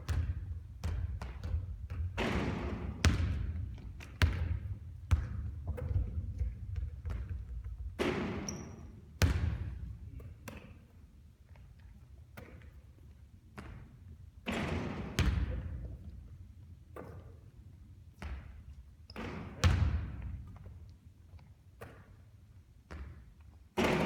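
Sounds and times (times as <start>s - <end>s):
basketball bouncing on court: 0.0s - 10.8s, 13.6s - 16.0s, 18.1s - 20.8s, 22.9s - 24.0s.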